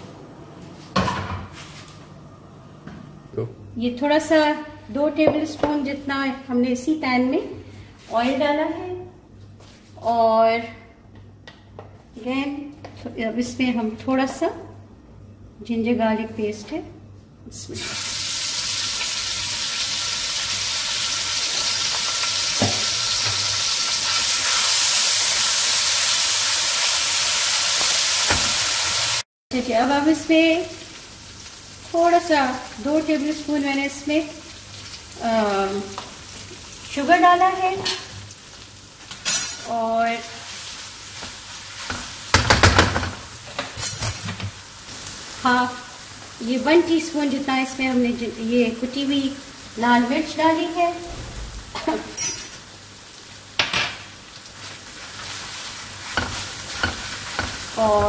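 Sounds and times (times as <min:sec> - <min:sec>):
paste sizzling in hot oil: 0:17.8 - 0:29.2, 0:54.2 - 0:58.0.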